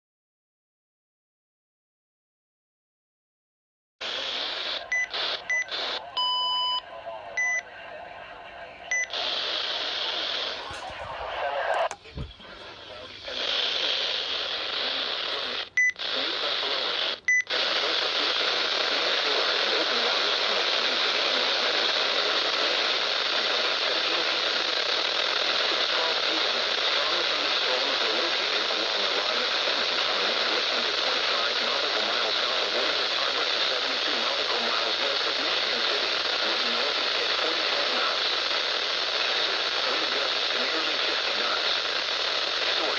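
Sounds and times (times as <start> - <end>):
radio static hiss: 4.0 - 42.9
longer lower beep: 4.9 - 7.7.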